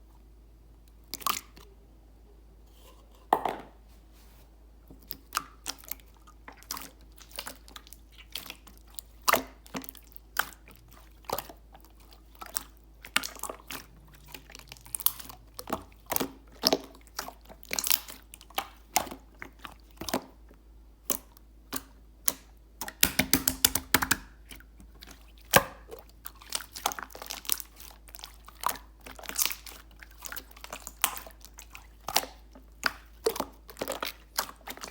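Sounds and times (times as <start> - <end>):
slime popping and clicking: 22.3 - 24.3.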